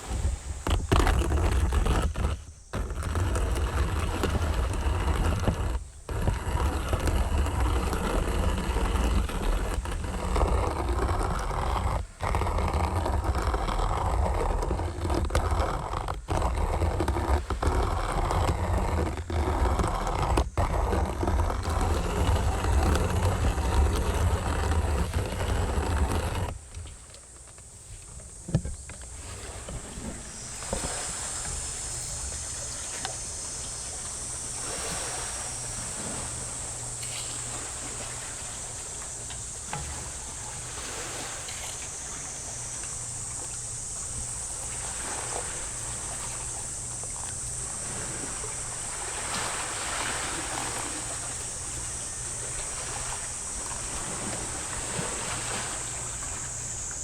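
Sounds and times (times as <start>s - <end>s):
sea waves washing ashore: 0.0s - 8.2s, 27.7s - 57.0s
high-pitched hiss: 27.2s - 57.0s.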